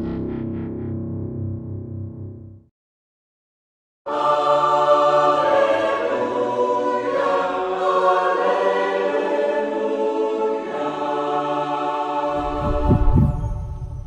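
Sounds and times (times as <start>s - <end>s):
choir holding chord: 4.1s - 13.8s.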